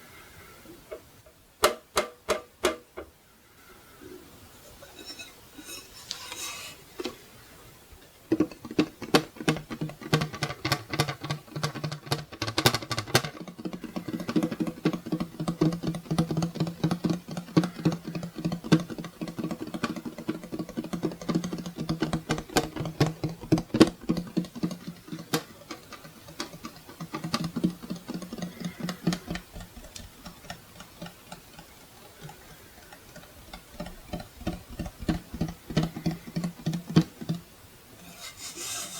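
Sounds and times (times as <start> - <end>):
tapping on clock case: 8.3 - 37.4.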